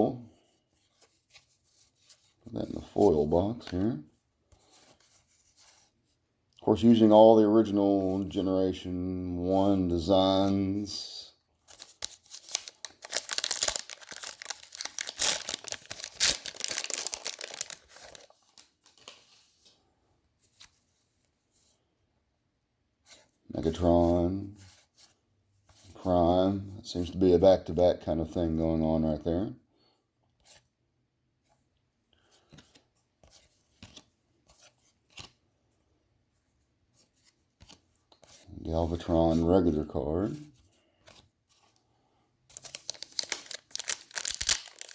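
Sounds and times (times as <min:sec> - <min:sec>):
trading cards clicking and rustling: 0:11.7 - 0:19.2, 0:42.5 - 0:44.9
wrapper tearing and crinkling: 0:11.8 - 0:18.7, 0:42.6 - 0:44.9.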